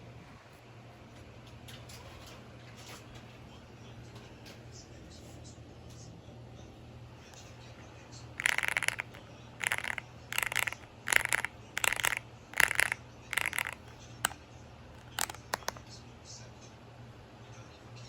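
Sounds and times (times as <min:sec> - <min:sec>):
mechanical keyboard clicking: 0:08.4 - 0:13.9, 0:15.0 - 0:15.8.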